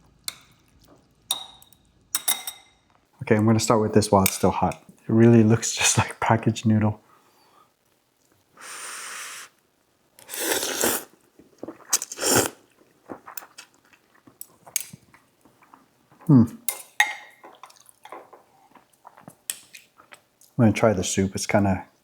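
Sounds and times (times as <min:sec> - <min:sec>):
person blowing breath: 0:08.6 - 0:09.6, 0:10.3 - 0:11.1
noisy noodle slurps: 0:10.2 - 0:14.3.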